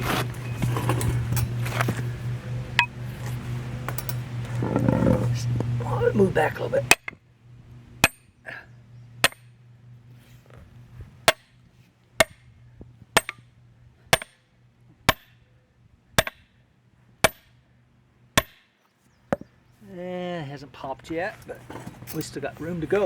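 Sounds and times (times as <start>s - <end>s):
hammer striking metal tool: 13.2s - 13.4s.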